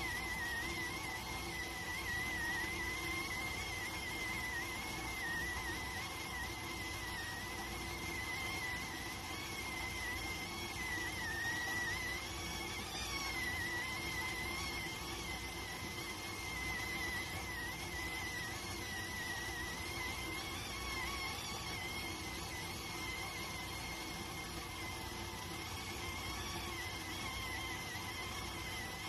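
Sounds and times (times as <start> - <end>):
rice cooker whistling: 0.0 - 29.0.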